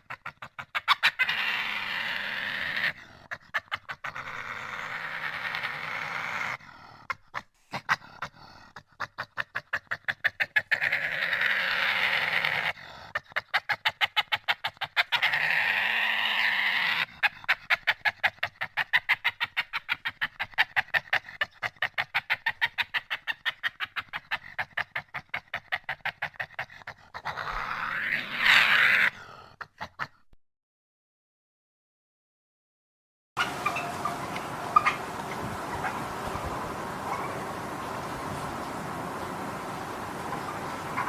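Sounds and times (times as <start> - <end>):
badger squealing: 0.0 - 3.0, 14.2 - 17.1, 27.2 - 29.2, 33.4 - 37.5
badger chattering: 0.0 - 6.5, 8.8 - 30.0, 33.4 - 37.5.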